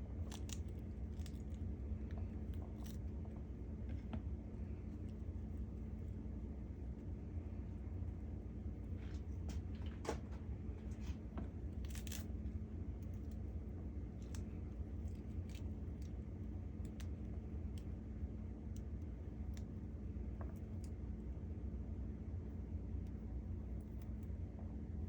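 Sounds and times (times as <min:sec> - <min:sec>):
steady low hum: 0:00.0 - 0:25.0
light clicks and taps of seeds: 0:14.1 - 0:18.0, 0:18.6 - 0:21.0.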